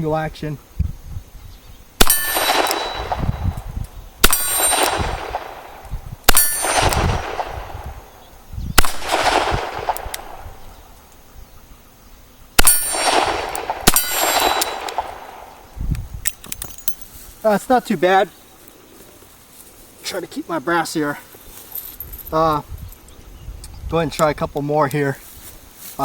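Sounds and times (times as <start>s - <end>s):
steel plate ringing: 2.0s - 3.2s, 6.3s - 6.9s, 12.6s - 13.2s, 13.9s - 14.9s.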